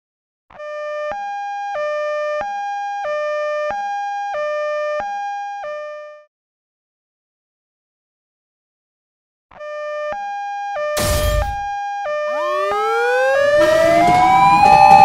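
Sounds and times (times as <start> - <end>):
two-tone emergency siren: 0.5 - 6.3, 9.5 - 15.0.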